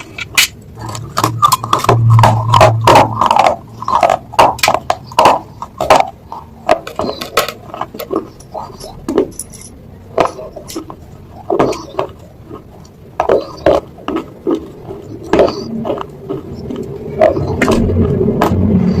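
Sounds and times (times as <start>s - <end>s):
chewing and slurping: 0.0s - 19.0s
low rumble: 0.6s - 6.7s, 13.9s - 19.0s.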